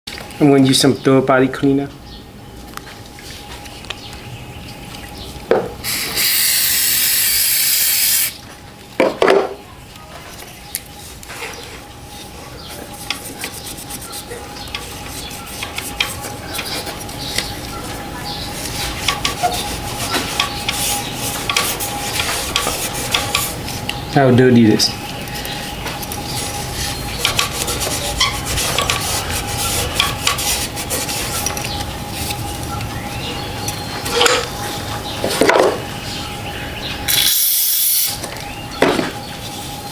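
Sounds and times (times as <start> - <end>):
aerosol spray hiss: 5.8 - 8.4
scrubbing and wiping: 12.2 - 17.8, 18.4 - 23.8, 26.2 - 32.7.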